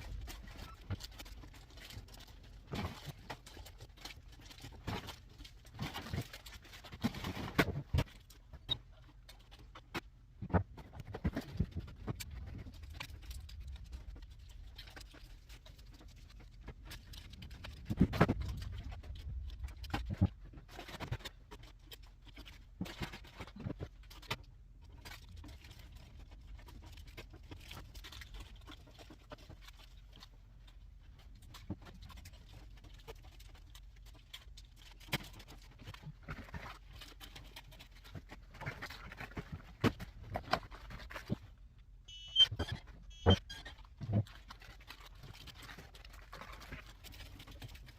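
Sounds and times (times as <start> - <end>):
snack packets knocking and rustling: 0.0 - 41.6, 43.6 - 47.9.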